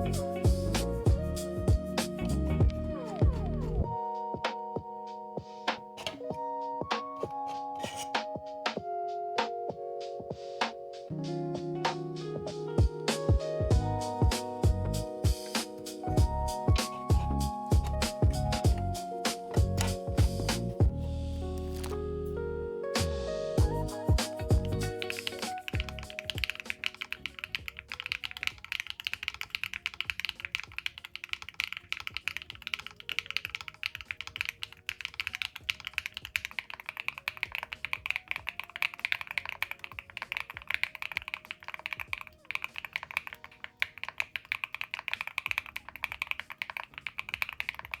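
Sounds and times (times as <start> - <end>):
mechanical keyboard typing: 5.7 - 6.4, 14.1 - 20.9, 23.6 - 48.0.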